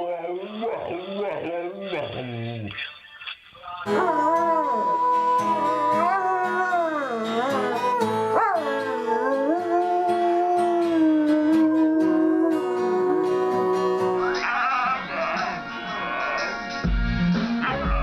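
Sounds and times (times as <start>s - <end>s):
dog howling: 0.0s - 2.6s, 3.9s - 15.4s
music with held notes: 3.9s - 18.0s.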